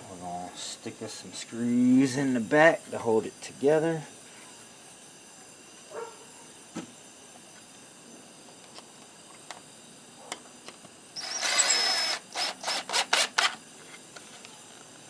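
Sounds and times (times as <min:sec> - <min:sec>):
cordless drill whining: 0:11.2 - 0:13.6
drill trigger bursts: 0:11.2 - 0:13.6.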